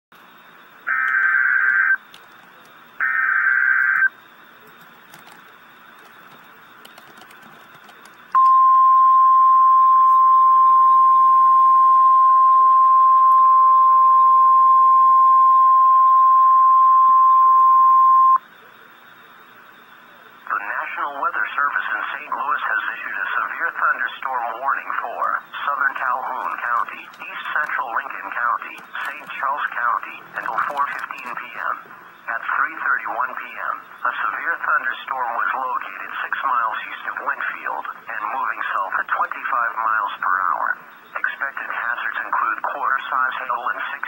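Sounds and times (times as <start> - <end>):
faint radio hiss: 0.2 - 44.0
steady alarm tone: 0.3 - 2.1, 2.8 - 4.5, 8.3 - 34.9
harsh digital data bursts: 0.8 - 2.0, 2.9 - 4.2.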